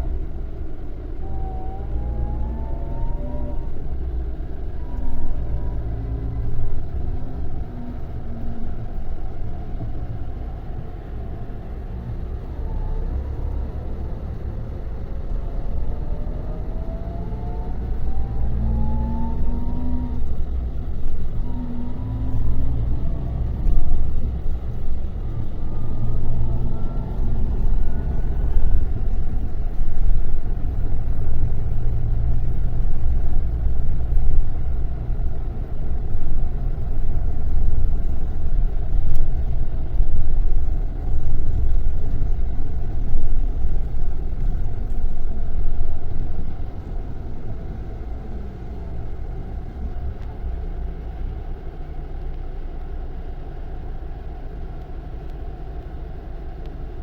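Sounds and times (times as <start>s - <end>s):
bus diesel engine rumbling: 0.0s - 57.0s
whine climbing in pitch: 1.2s - 8.7s, 15.4s - 47.8s.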